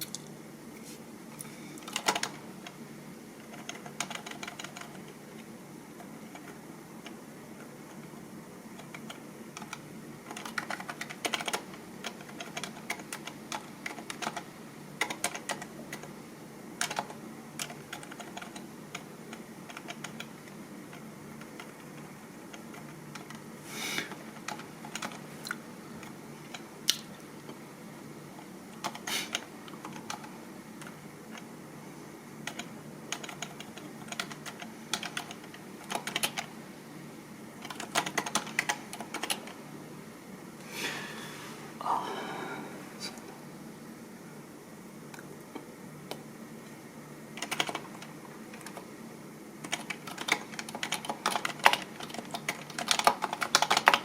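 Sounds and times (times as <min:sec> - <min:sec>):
keyboard typing: 0:01.8 - 0:02.8, 0:03.4 - 0:16.2, 0:16.8 - 0:23.4, 0:24.1 - 0:26.7, 0:28.7 - 0:31.5, 0:32.4 - 0:36.5, 0:37.6 - 0:39.6, 0:47.3 - 0:48.9, 0:49.6 - 0:54.0.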